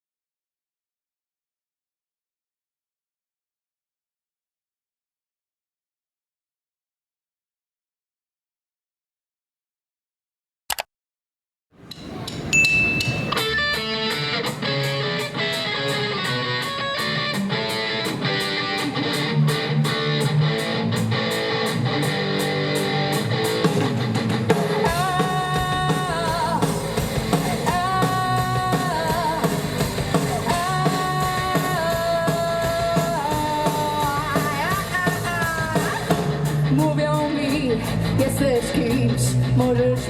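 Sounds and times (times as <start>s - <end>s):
rock band playing live: 12.4s - 40.0s.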